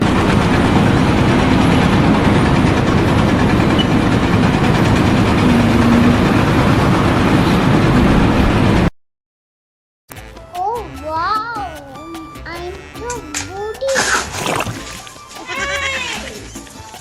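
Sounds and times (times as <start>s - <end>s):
heavy engine running: 0.0s - 8.9s.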